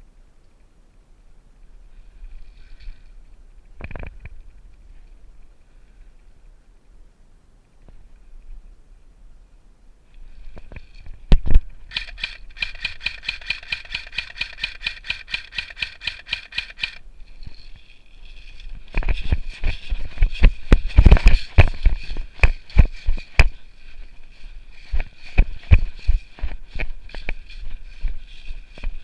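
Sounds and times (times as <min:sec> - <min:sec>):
rustling near microphone: 0:01.5 - 0:07.0, 0:10.0 - 0:29.0
airsoft gun full-auto burst: 0:11.9 - 0:17.0.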